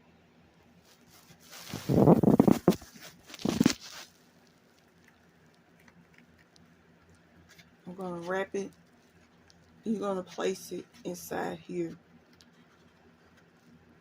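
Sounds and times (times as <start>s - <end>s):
cardstock paper rustling: 0.9s - 4.2s.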